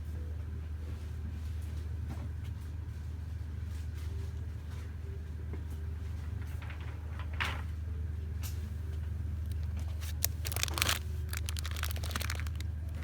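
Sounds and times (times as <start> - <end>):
steady low hum: 7.8 - 13.0.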